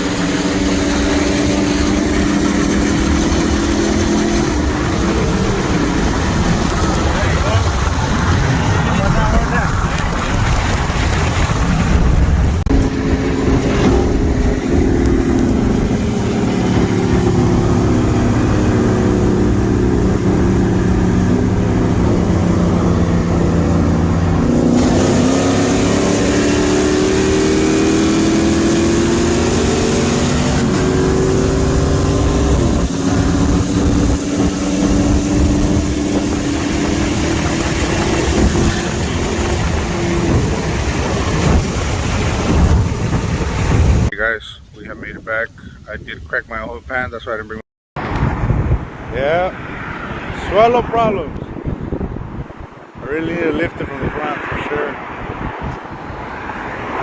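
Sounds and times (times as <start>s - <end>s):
truck engine running: 0.0s - 44.1s
road and wind noise: 0.0s - 57.0s.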